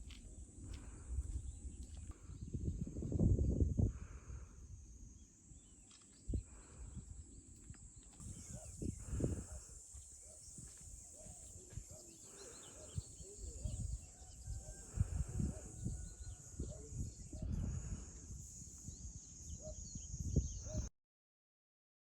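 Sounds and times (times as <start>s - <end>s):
wind on microphone: 0.0s - 5.2s, 6.3s - 20.9s
high-pitched insect hiss: 0.0s - 20.9s
faint chirps: 4.0s - 20.9s.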